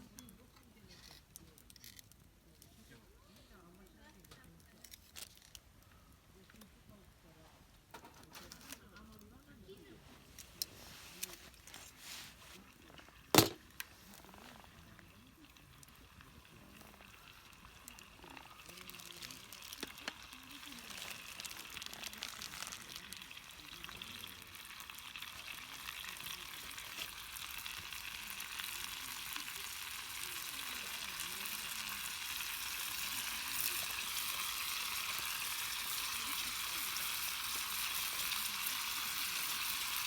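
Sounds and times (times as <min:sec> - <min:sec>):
food sizzling in a pan: 0:10.6 - 0:40.0.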